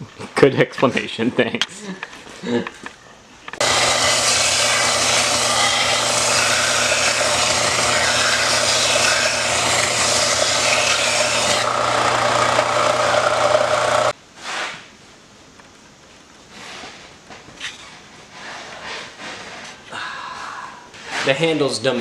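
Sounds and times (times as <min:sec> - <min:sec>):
electric grinder sanding wood: 0:03.6 - 0:14.2.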